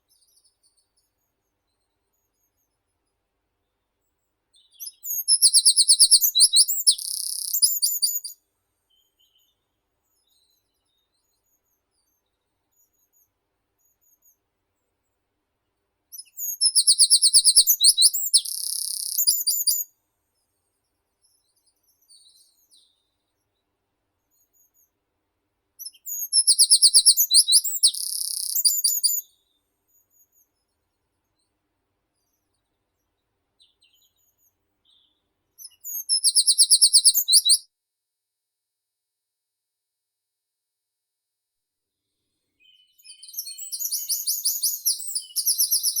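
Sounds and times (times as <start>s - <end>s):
songbird singing trills: 4.6s - 8.4s, 16.1s - 19.9s, 25.8s - 29.4s, 33.6s - 37.6s, 42.6s - 46.0s.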